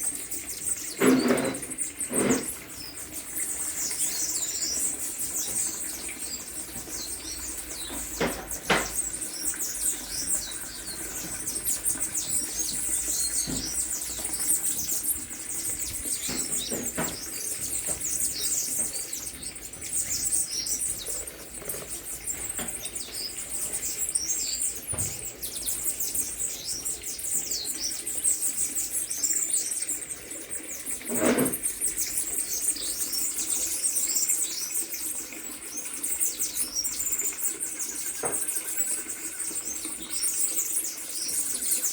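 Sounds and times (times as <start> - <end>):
birds chirping in chorus: 0.0 - 41.9
soft knocks: 7.8 - 9.2, 12.7 - 15.0, 15.9 - 19.0, 24.8 - 25.5.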